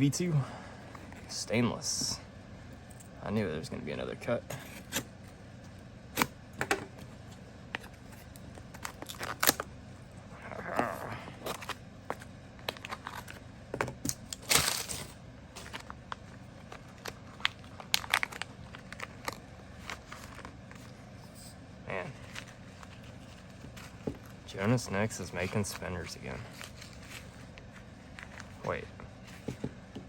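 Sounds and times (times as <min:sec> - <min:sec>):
packaging being torn and crinkled: 0:08.3 - 0:09.7, 0:15.6 - 0:21.0.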